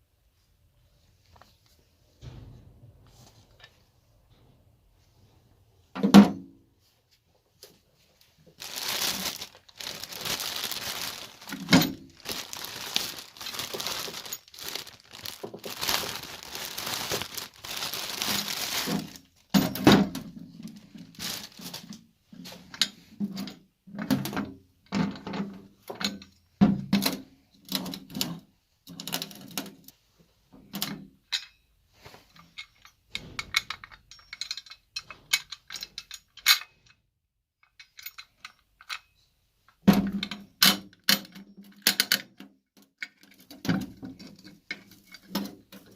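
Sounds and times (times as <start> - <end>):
rustling and scraping: 0.4 - 6.0, 6.7 - 23.5, 31.8 - 36.5
tools and parts clunking: 9.1 - 21.0, 30.6 - 37.0, 37.6 - 42.4.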